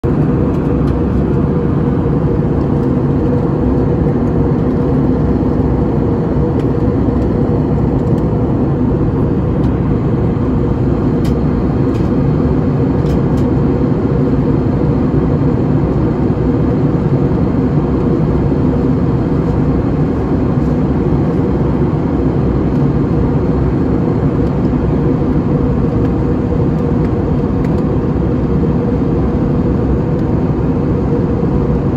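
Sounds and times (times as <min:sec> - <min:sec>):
airliner cabin engine drone: 0:00.0 - 0:31.9
steady hum: 0:00.0 - 0:31.9.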